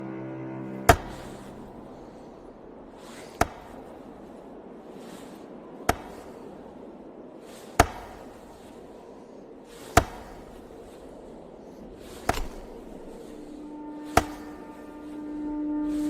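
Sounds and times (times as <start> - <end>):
steady low hiss: 0.0 - 16.0
sharp knocks: 14.1 - 14.6.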